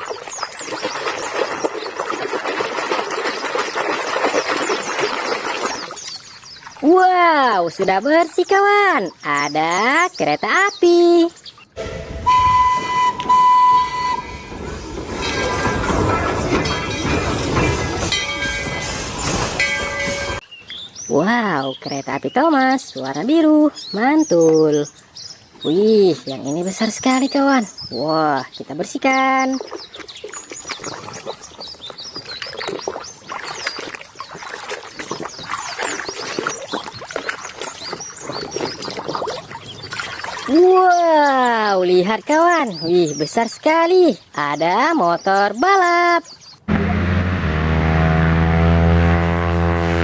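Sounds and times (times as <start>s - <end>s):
birds chirping: 0.0s - 2.5s, 3.4s - 46.8s
water splashing and sloshing: 0.0s - 10.6s, 11.3s - 21.0s, 28.4s - 42.8s
train horn: 11.8s - 14.5s, 46.7s - 50.0s
moving train rumble and clatter: 13.7s - 20.4s.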